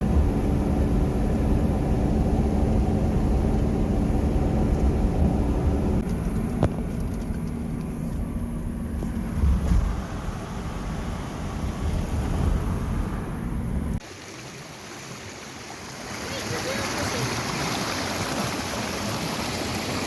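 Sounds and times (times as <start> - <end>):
vehicle engine and road rumble: 0.0 - 14.1.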